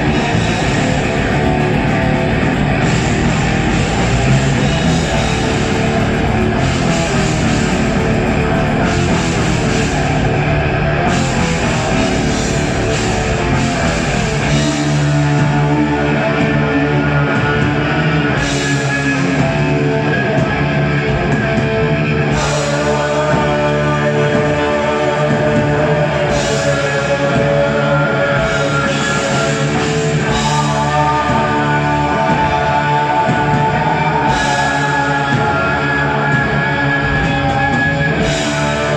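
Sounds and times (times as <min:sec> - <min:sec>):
drum kit with cymbal crashes: 0:00.0 - 0:15.8
bass guitar: 0:00.0 - 0:38.9
distorted electric guitars: 0:00.0 - 0:38.9.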